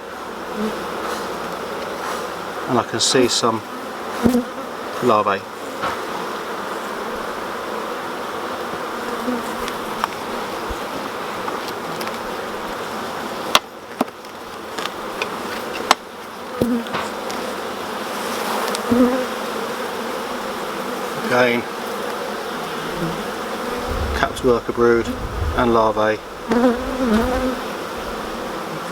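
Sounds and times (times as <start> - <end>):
bees buzzing: 21.8 - 28.9.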